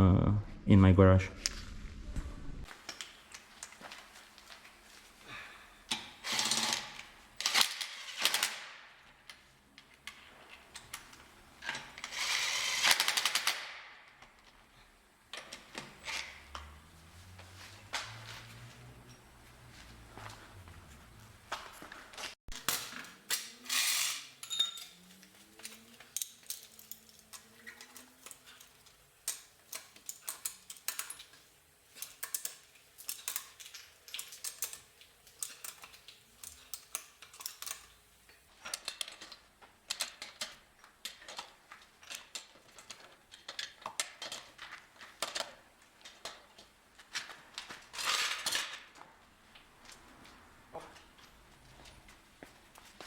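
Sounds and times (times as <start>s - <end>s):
metallic clicks of bolts and tools: 22.5s - 46.4s.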